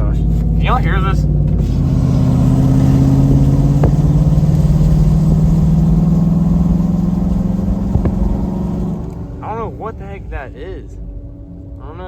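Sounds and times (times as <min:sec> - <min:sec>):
truck exhaust droning: 0:00.0 - 0:10.7.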